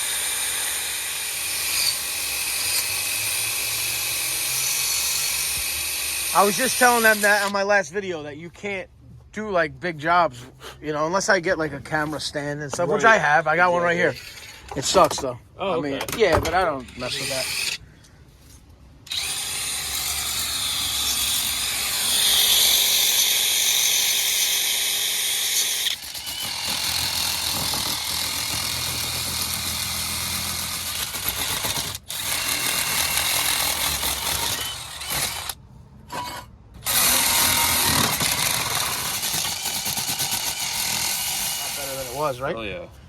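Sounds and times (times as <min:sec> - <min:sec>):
power drill wire brush scouring rust: 0:00.0 - 0:07.6, 0:16.9 - 0:17.8, 0:19.1 - 0:42.4.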